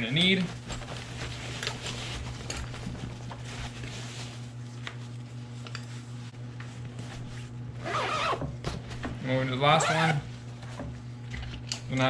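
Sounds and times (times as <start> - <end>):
fabric rustling: 0.5 - 4.6, 7.0 - 8.4.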